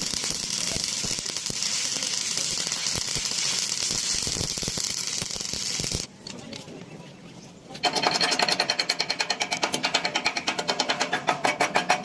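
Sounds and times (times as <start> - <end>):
arc welding crackling hiss: 0.0 - 6.1
sharp welding pops: 0.0 - 6.1.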